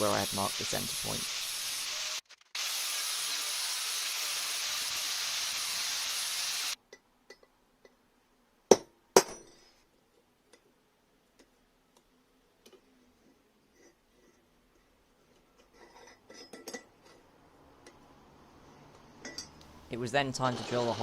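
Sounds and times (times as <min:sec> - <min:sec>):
steel grinding hiss: 0:00.0 - 0:06.8
light metallic clinks: 0:19.2 - 0:19.6.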